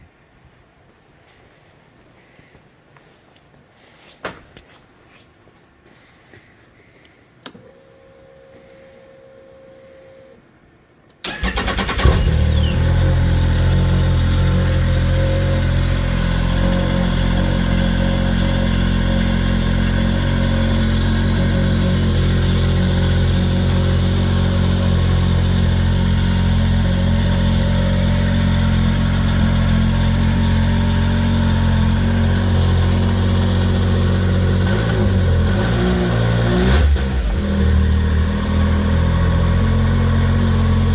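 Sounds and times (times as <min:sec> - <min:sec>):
snowmobile engine idling: 0:12.1 - 0:36.2, 0:36.8 - 0:40.9.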